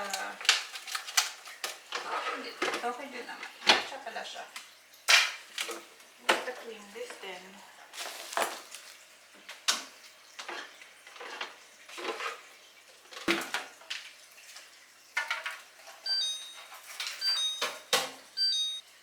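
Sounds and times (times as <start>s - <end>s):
dishes clattering: 15.2s - 18.2s
short high electronic beeps: 16.1s - 17.8s, 18.4s - 18.8s.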